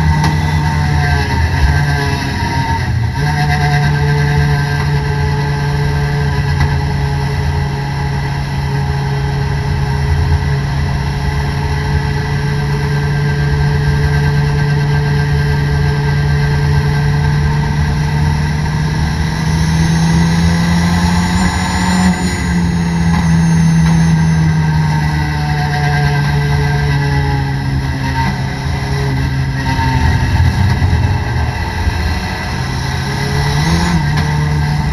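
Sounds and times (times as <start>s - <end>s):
race car engine from cabin: 0.0s - 34.9s
road and spray noise: 15.4s - 34.9s.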